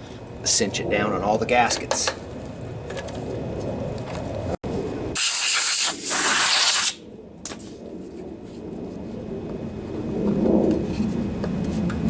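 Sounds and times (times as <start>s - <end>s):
compressed air hissing: 5.2s - 7.0s.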